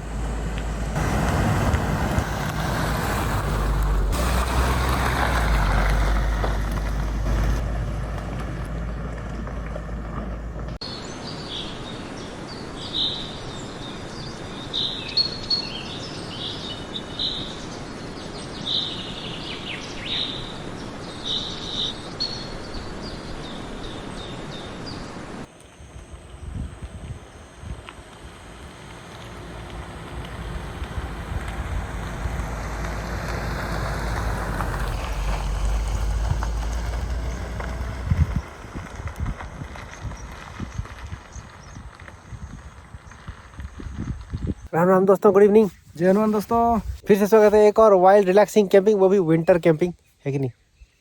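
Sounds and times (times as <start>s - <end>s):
car driving rumble: 0.0s - 10.8s, 25.9s - 44.7s
birds chirping: 0.0s - 25.5s, 26.2s - 51.0s.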